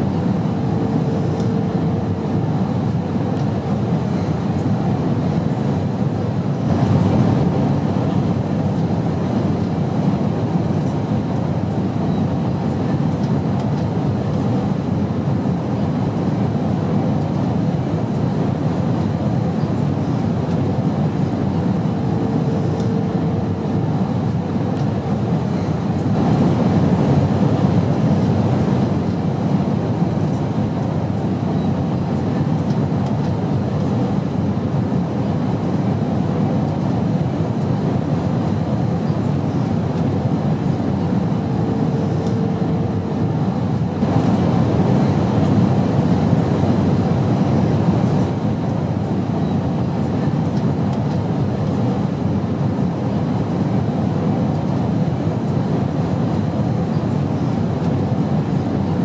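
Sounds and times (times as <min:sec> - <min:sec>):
airplane cabin engine rumble: 0:00.0 - 0:59.0.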